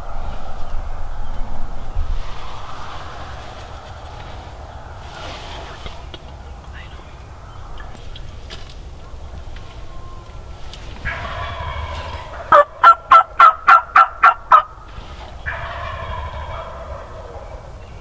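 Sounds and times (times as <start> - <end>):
turkey gobbling: 9.0 - 18.0
sharp turkey yelps: 11.0 - 14.8, 15.4 - 17.7.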